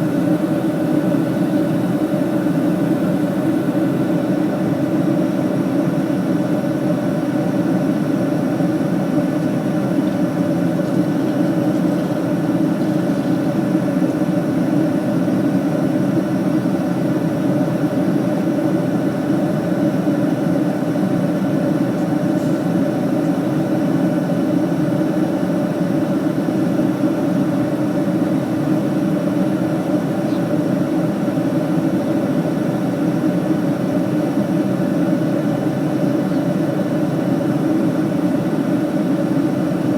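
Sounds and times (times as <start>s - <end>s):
airliner cabin engine drone: 0.0s - 39.9s
faint steady hums: 0.0s - 39.9s.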